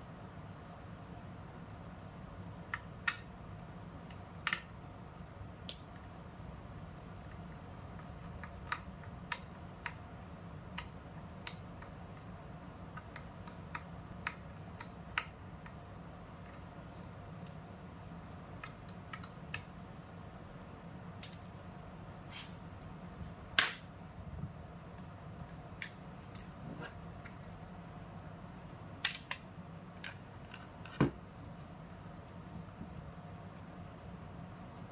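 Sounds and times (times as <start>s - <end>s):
scrape: 22.3s - 22.6s.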